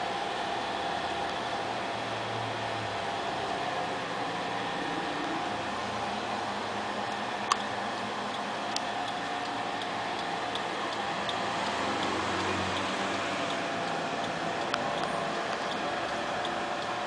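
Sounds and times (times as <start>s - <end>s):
steady noise: 0.0s - 17.0s
turn signal flasher ticking: 7.1s - 17.0s.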